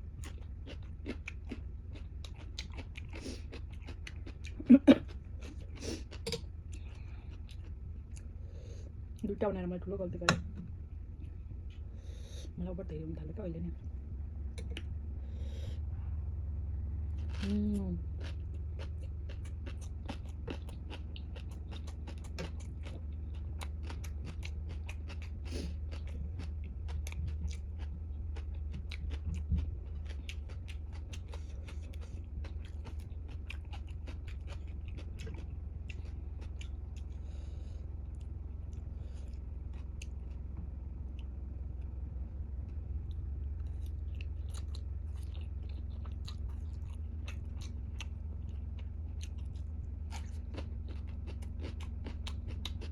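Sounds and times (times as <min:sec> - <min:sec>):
steady low hum: 0:00.0 - 0:52.9
person chewing and biting: 0:00.1 - 0:08.4, 0:17.1 - 0:40.5, 0:43.0 - 0:52.9.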